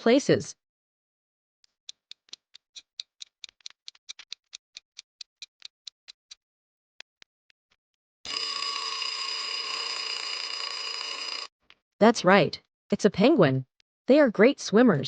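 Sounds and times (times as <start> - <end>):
alarm clock bell ringing: 8.3 - 11.5.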